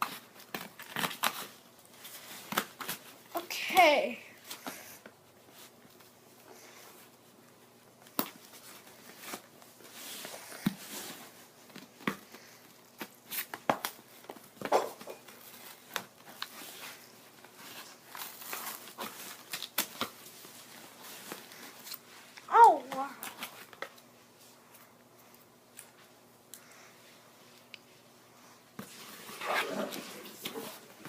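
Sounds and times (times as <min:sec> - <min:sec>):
packaging crinkling and tearing: 0:00.0 - 0:03.0, 0:15.3 - 0:22.1.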